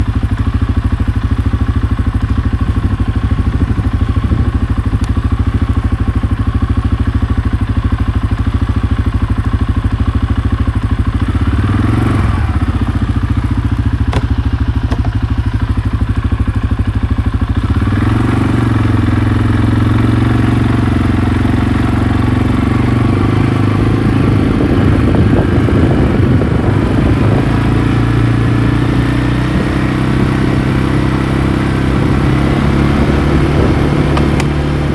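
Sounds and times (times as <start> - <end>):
atv engine running: 0.0 - 34.9.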